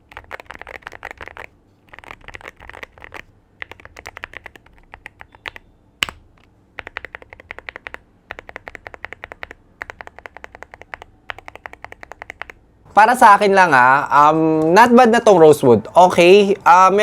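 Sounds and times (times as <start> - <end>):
mechanical keyboard typing: 0.0 - 12.6.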